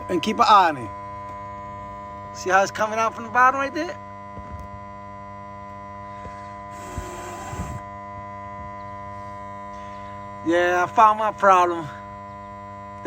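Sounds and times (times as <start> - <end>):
electrical hum: 0.0 - 13.0
rush of blown air: 6.8 - 7.9.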